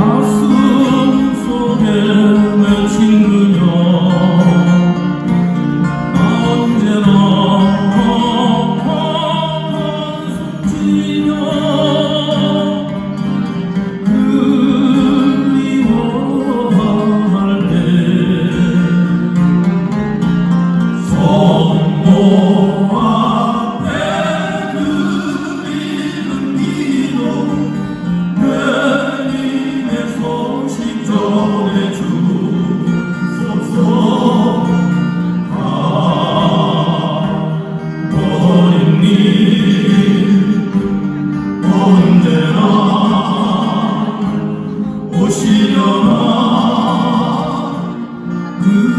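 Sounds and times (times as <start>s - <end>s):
acoustic guitars playing: 0.0s - 48.9s
group singing: 0.0s - 48.9s.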